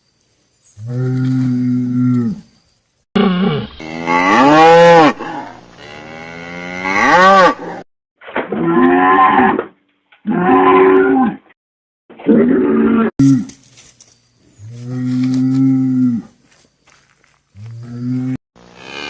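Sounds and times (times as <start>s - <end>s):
cattle mooing: 3.2s - 7.8s, 17.7s - 19.0s.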